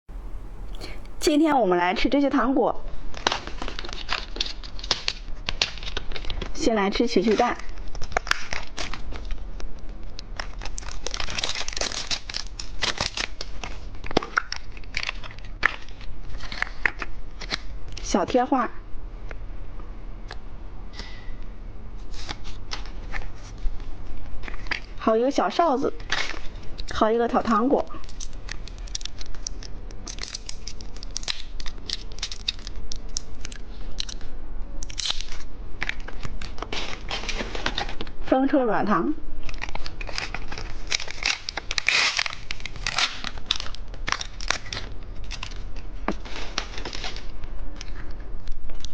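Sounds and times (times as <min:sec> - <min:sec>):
plastic packaging crinkling and tearing: 0:03.1 - 0:06.6, 0:07.2 - 0:18.0, 0:22.1 - 0:25.0, 0:25.9 - 0:38.2, 0:39.4 - 0:48.9.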